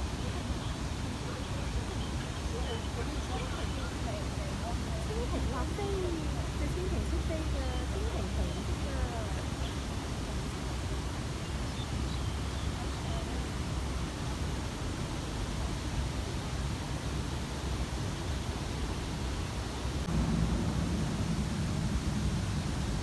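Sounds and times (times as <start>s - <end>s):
waterfall rushing: 19.4s - 23.0s
low rumble: 20.0s - 23.0s.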